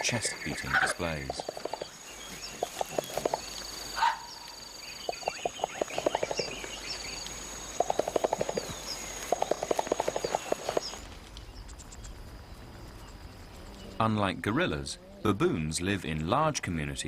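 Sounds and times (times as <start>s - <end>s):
high insect drone: 0.0s - 11.1s
bird calls: 0.0s - 15.4s
gorilla chest beating: 0.4s - 3.6s.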